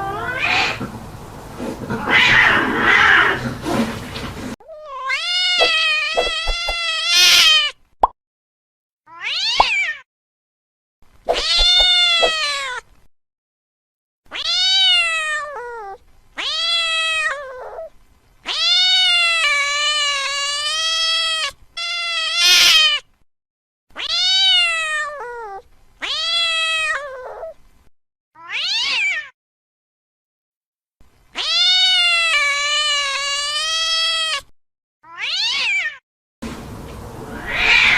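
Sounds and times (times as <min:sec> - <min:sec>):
cat yowling: 0:00.0 - 0:00.9, 0:01.9 - 0:03.5, 0:04.6 - 0:07.7, 0:09.1 - 0:10.0, 0:11.3 - 0:12.8, 0:14.3 - 0:17.9, 0:18.5 - 0:23.0, 0:24.0 - 0:27.6, 0:28.4 - 0:29.4, 0:31.4 - 0:36.0, 0:37.2 - 0:37.9.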